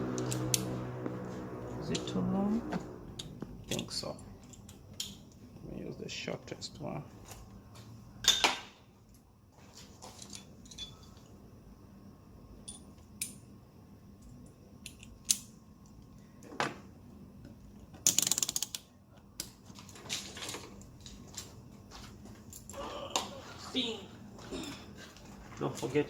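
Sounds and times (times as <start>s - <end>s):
ratchet wrench clicks: 18.0s - 18.9s.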